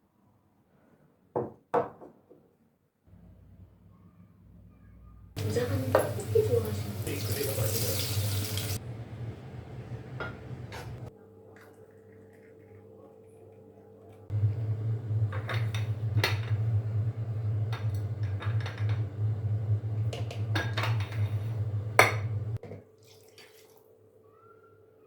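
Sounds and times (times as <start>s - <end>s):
dishes and utensils clinking: 5.4s - 8.8s, 15.2s - 16.7s, 17.6s - 19.1s, 20.1s - 22.8s.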